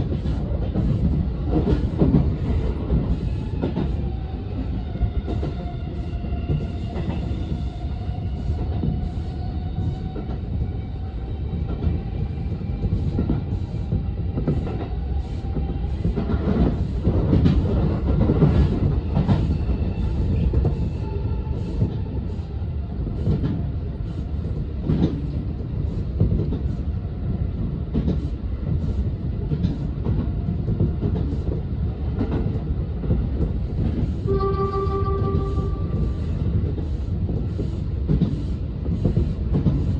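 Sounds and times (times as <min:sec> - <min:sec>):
train rumbling along track: 0:00.0 - 0:39.9
train horn blast: 0:34.3 - 0:36.4.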